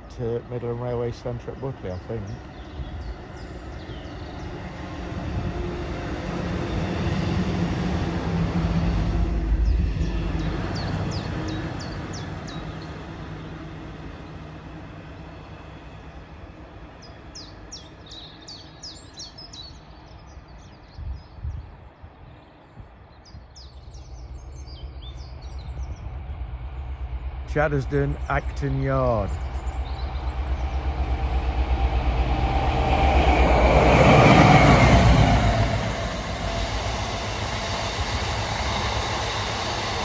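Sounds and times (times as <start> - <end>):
train passing: 0.0 - 40.0
small birds chirping: 1.0 - 4.9, 9.6 - 12.9, 17.0 - 27.0, 27.6 - 32.3.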